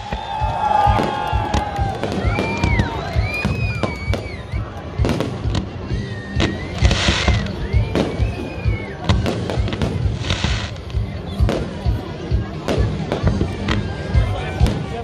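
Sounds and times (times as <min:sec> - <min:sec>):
firework whistling: 0:00.0 - 0:11.6
firework crackling hiss: 0:00.0 - 0:11.9.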